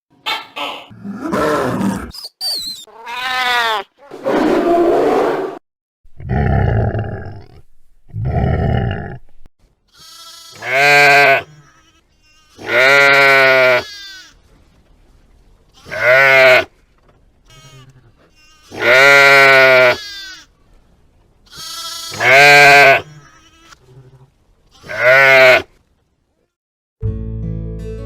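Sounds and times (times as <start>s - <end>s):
sheep bleating: 2.9s - 3.9s, 9.9s - 14.4s, 15.7s - 16.7s, 17.4s - 20.5s, 21.5s - 25.7s.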